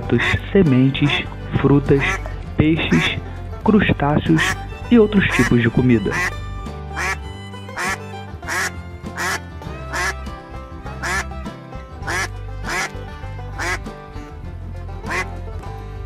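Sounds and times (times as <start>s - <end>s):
duck quacking: 0.0s - 0.4s, 2.0s - 3.2s, 4.4s - 6.4s, 7.0s - 10.2s, 11.0s - 11.4s, 12.0s - 13.0s, 13.6s - 13.8s, 15.0s - 15.3s
background music: 0.0s - 16.0s.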